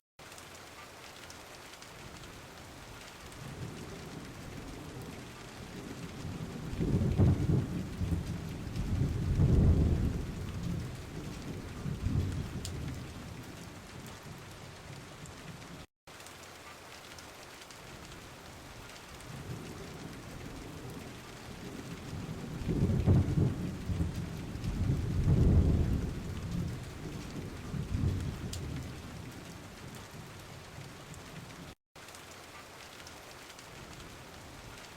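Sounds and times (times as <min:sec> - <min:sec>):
steady rain: 0:00.2 - 0:34.9
rolling thunder: 0:03.4 - 0:14.4, 0:19.3 - 0:30.3.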